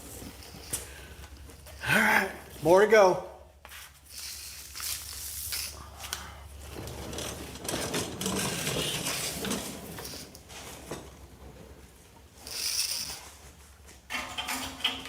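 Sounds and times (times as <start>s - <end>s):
tools scraping and clicking on metal: 12.4s - 13.4s.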